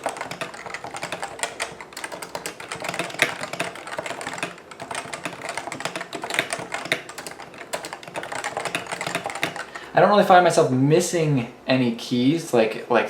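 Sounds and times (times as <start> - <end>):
fast typing on keyboard: 0.0 - 9.9.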